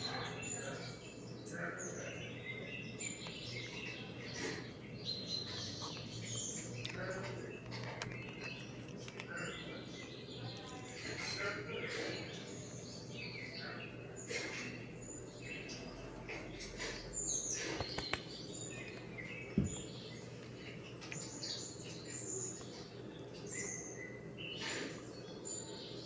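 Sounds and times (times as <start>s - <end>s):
birds chirping: 0.0s - 26.0s
brief low thump: 19.6s - 19.8s.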